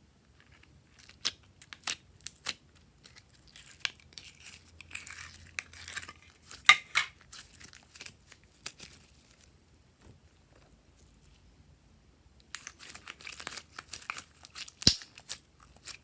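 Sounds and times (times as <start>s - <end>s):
plastic packaging crinkling and tearing: 1.0s - 9.5s, 12.5s - 16.0s.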